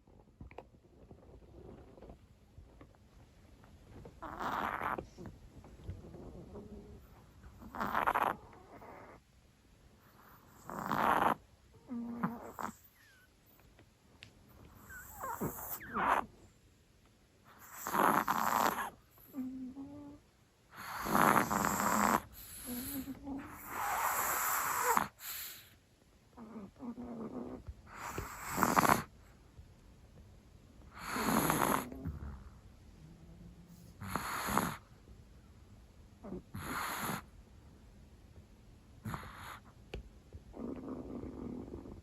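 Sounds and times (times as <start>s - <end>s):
dog snoring: 4.0s - 9.2s, 10.0s - 13.3s, 14.6s - 16.3s, 17.4s - 29.3s, 30.9s - 35.0s, 36.2s - 37.4s, 39.0s - 42.0s.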